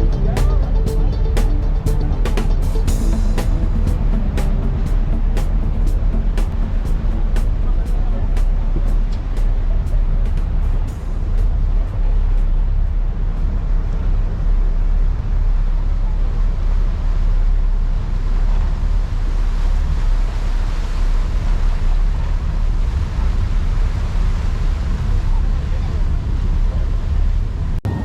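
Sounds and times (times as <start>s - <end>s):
water rushing: 0.0s - 15.4s
ferry engine rumble: 0.0s - 28.0s.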